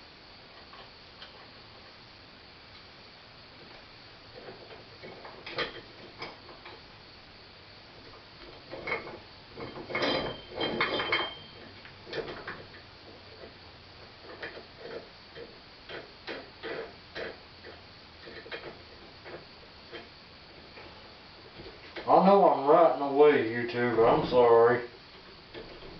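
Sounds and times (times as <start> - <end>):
metallic clatter with ring: 8.5 - 12.8
metal parts clinking and knocking: 8.7 - 12.8.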